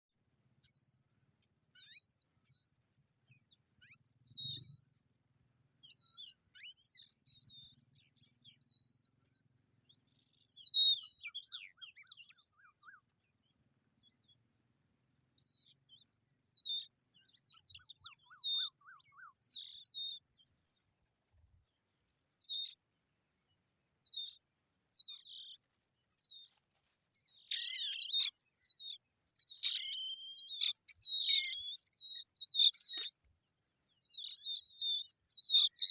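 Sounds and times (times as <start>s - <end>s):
small birds chirping: 0.5s - 14.6s, 15.2s - 35.9s
bird trills: 16.8s - 20.2s, 27.2s - 33.2s, 34.0s - 35.9s.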